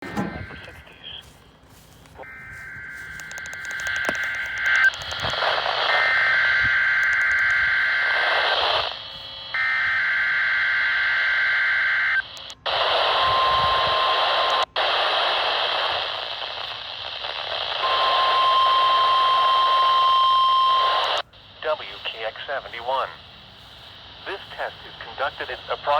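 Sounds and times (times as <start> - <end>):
digital header tones: 0.0 - 1.3, 2.2 - 8.3
steady warning alarm tone: 0.0 - 12.4
radio static hiss: 0.0 - 25.9.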